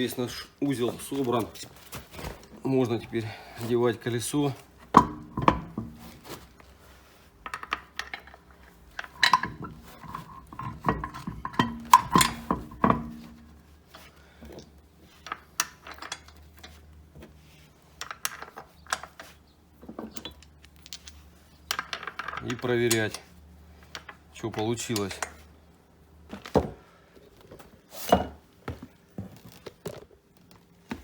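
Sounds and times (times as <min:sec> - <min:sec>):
metal tools clanking: 0:05.0 - 0:06.3, 0:07.5 - 0:14.0, 0:15.2 - 0:16.8.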